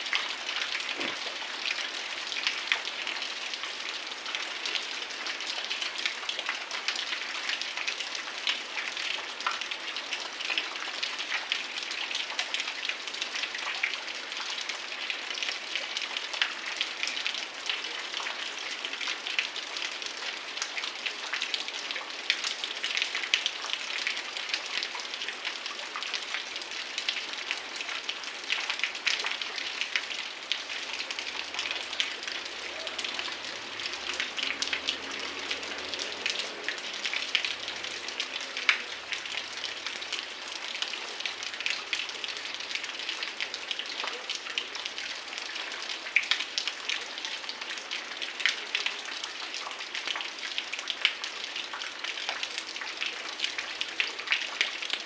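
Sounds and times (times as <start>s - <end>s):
heavy rain falling: 0.0s - 7.0s, 18.8s - 43.9s.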